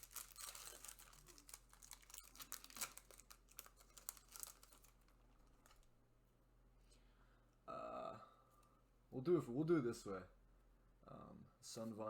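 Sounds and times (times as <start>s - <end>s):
foil wrapper tearing and crinkling: 0.0s - 5.9s.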